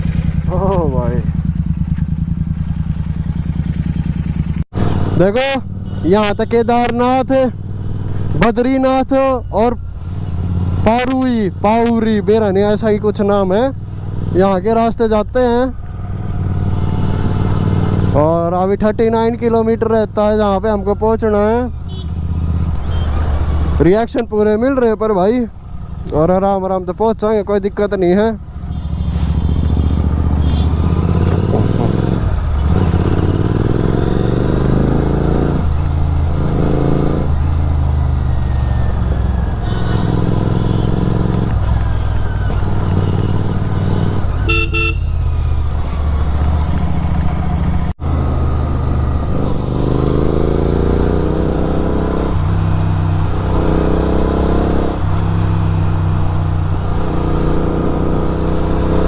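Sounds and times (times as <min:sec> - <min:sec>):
motorcycle engine revving: 0:00.0 - 0:59.0
horn: 0:44.5 - 0:45.1.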